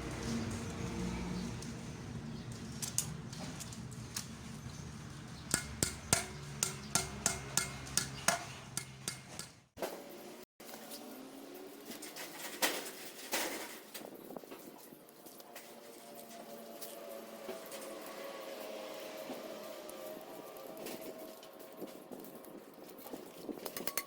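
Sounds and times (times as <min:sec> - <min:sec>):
metal clanks: 0:05.1 - 0:09.6.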